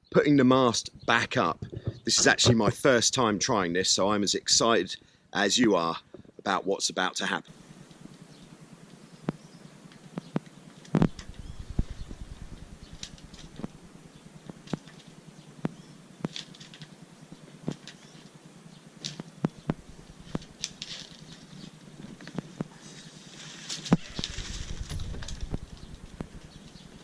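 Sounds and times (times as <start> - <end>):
mast and rigging clicks and knocks: 1.5 - 3.0.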